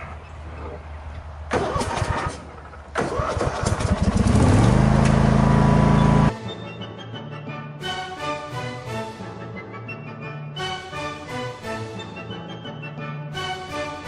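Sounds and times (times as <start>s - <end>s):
small engine cranking and running: 3.0s - 6.3s.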